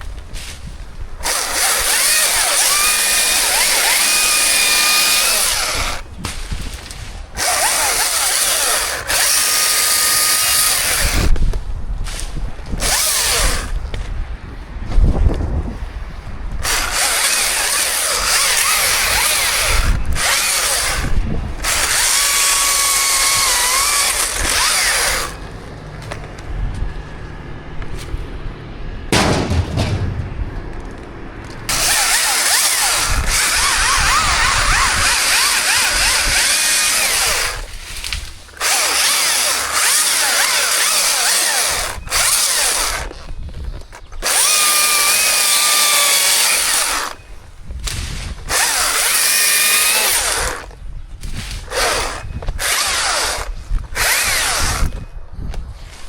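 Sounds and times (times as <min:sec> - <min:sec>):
chainsaw cutting wood: 0:01.2 - 0:11.4, 0:12.1 - 0:13.8, 0:16.6 - 0:26.2, 0:31.7 - 0:43.2, 0:44.2 - 0:47.2, 0:47.9 - 0:55.0
low thumps: 0:29.1 - 0:32.0.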